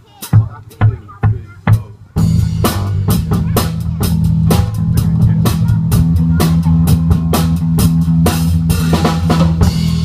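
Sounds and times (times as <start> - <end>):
bass guitar: 0.0 - 10.0
drum kit beat: 0.0 - 10.0
electric guitar: 2.2 - 10.0.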